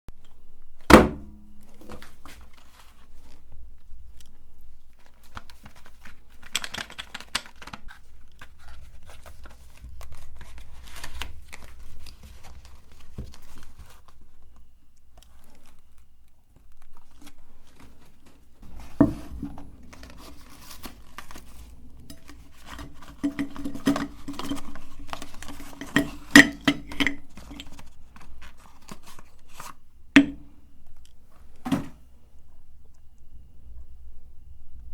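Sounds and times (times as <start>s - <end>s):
low hum: 29.8s - 34.9s.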